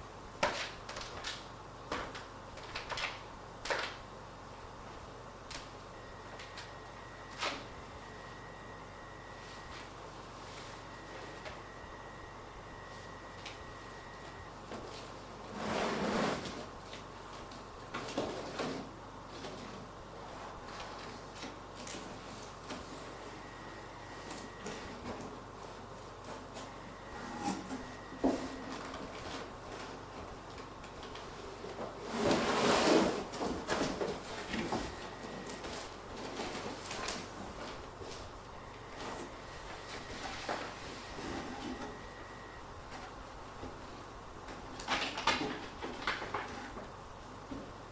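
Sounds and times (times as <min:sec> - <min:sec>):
cardboard sliding scrape: 0:15.5 - 0:16.7, 0:32.0 - 0:34.4.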